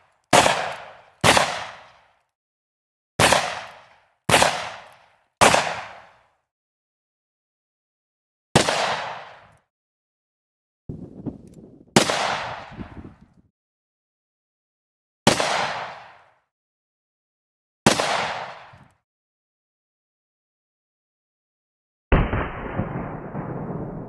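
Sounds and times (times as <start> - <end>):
gunshots: 0.4 - 1.9, 3.2 - 3.7, 4.3 - 6.0, 8.6 - 9.2, 11.0 - 13.2, 15.3 - 16.0.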